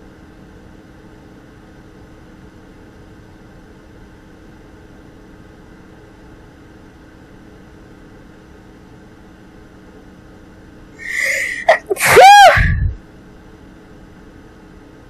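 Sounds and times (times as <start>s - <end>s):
steady low background hum: 0.0s - 15.0s
woman gasping before sneeze: 11.0s - 12.9s.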